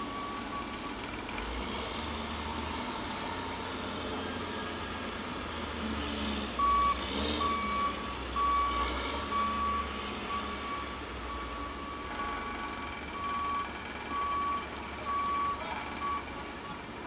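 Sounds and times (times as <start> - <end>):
backup alarm beeping: 6.6 - 16.8.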